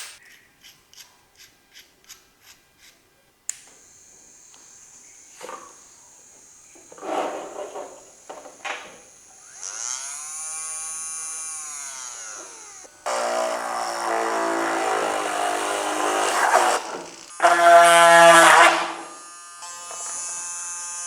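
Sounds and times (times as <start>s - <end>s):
electric drill motor whining: 3.7s - 21.0s
drill clicks: 5.4s - 17.5s.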